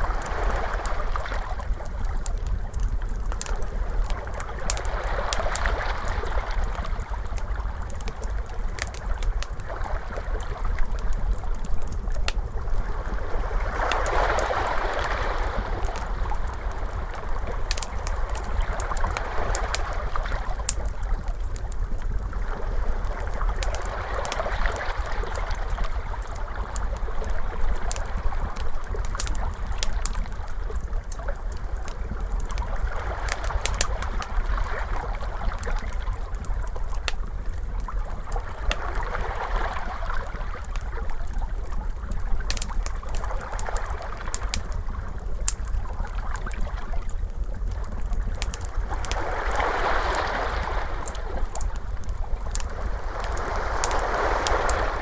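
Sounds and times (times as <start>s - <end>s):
ocean waves washing in: 0.0s - 1.7s, 12.8s - 21.2s, 48.8s - 55.0s
steady low rumble: 0.0s - 39.4s, 40.5s - 55.0s
crackling fire with snaps: 0.0s - 55.0s.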